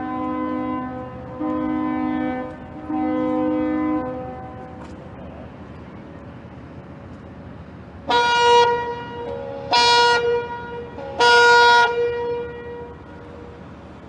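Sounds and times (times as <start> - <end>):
boat horn blasts: 0.0 - 5.0, 8.0 - 13.7.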